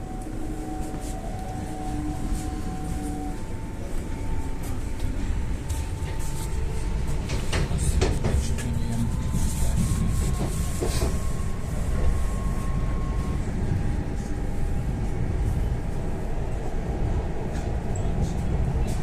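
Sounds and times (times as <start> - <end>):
train rumble inside carriage: 0.0 - 19.0
train wheels knocking: 7.2 - 8.8, 10.1 - 11.3.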